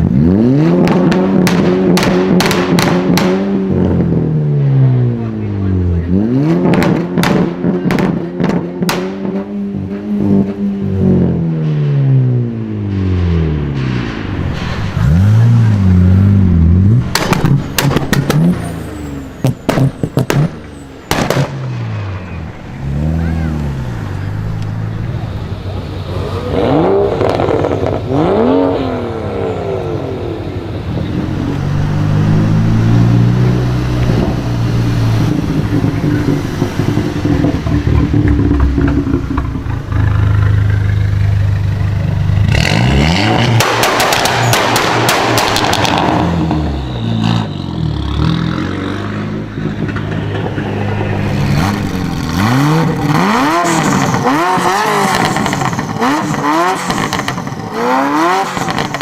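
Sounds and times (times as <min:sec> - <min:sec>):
car exhaust revving: 0:00.0 - 0:59.0
exhaust crackles and pops: 0:00.8 - 0:03.5, 0:06.6 - 0:09.5, 0:12.9 - 0:18.7, 0:19.4 - 0:21.8, 0:34.0 - 0:48.1, 0:48.7 - 0:59.0.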